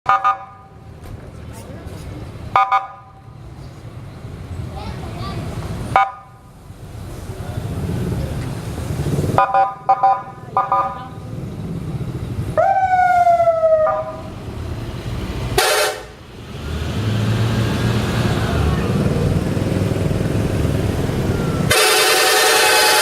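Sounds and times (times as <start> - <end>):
coach engine running: 0.2 - 23.0
siren whoop: 12.6 - 14.2, 21.1 - 21.8
multi-note horn blasts: 15.6 - 16.2, 21.6 - 23.0.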